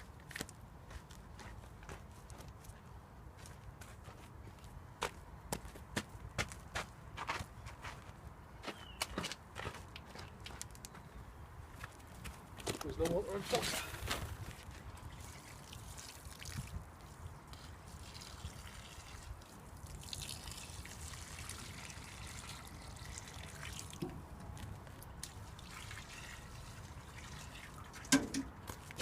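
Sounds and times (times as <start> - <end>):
faint trickling water: 14.8 - 29.0.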